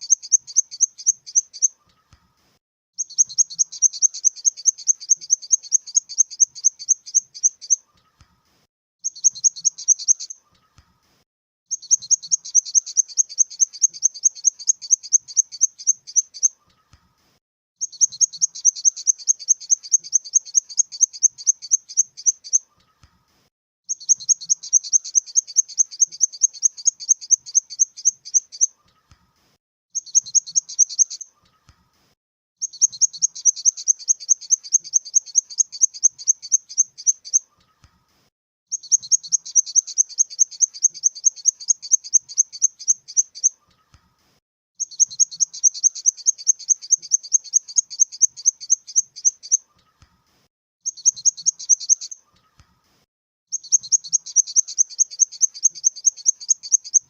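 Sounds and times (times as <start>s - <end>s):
grasshopper chirping: 3.0s - 7.8s, 11.7s - 16.5s, 17.8s - 22.6s, 23.9s - 28.7s, 32.6s - 37.4s, 38.7s - 43.5s, 44.8s - 49.6s, 50.9s - 52.2s, 53.5s - 57.0s.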